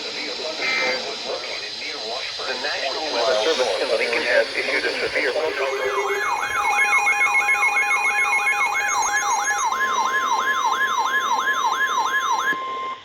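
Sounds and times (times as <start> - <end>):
steady electronic tones: 0.0 - 13.0
steady high tone: 2.4 - 13.0
siren-like wail sweeping: 5.7 - 12.9.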